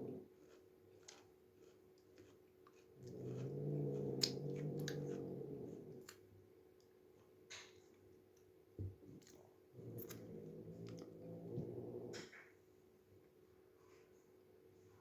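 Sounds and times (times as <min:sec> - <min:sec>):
cat growling yowl: 0:03.0 - 0:06.2, 0:09.8 - 0:12.3.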